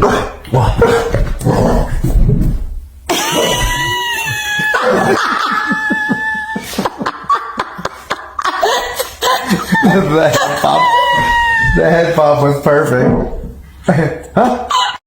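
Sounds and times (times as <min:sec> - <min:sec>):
person laughing: 0:03.1 - 0:12.0, 0:14.4 - 0:15.0.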